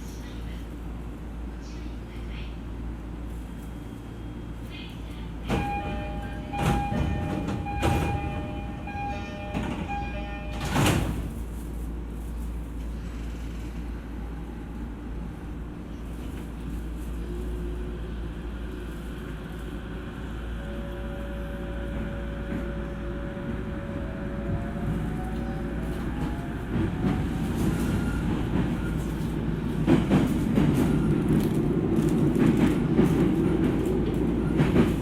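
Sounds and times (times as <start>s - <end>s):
train doors shutting thud: 5.4s - 11.4s
train door closing chime: 5.5s - 11.3s.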